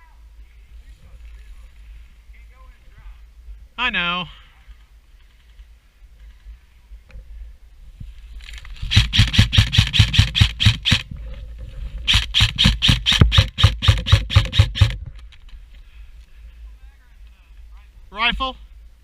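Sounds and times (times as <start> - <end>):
airsoft gun rapid shots: 8.9 - 11.1, 12.1 - 15.0.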